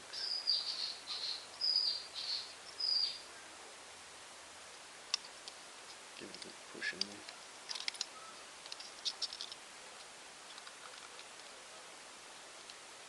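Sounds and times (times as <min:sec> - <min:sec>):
bird chirping: 0:00.1 - 0:03.3, 0:08.0 - 0:09.6.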